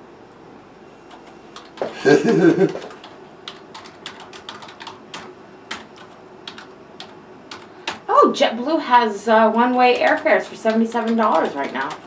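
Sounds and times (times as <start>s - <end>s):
computer keyboard typing: 1.1s - 8.1s, 9.4s - 12.0s.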